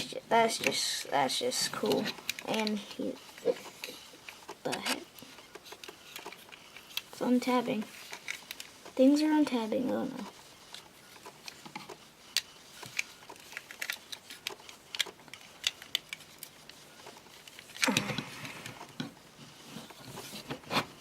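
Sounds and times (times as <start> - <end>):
plastic toy parts clicking: 11.2 - 16.5.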